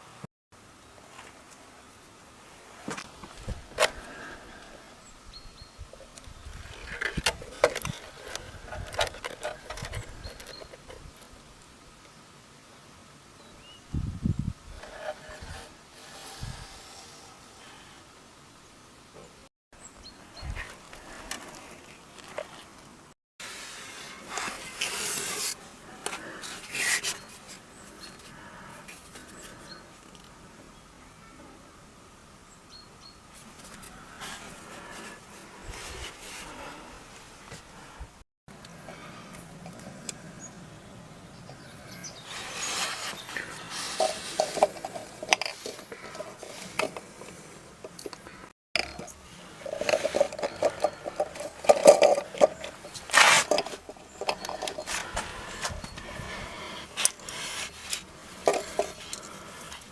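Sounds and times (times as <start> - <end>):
handling rustle: 6.0 - 11.4, 20.4 - 30.4, 41.4 - 59.9
rubbing and scraping of materials: 6.5 - 11.3, 14.7 - 17.7, 20.4 - 30.3, 33.3 - 37.7, 42.0 - 59.9.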